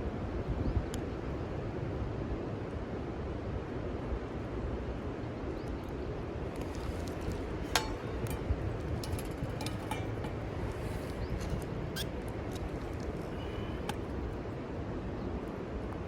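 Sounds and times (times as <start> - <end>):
wind rumbling on microphone: 0.0 - 16.0.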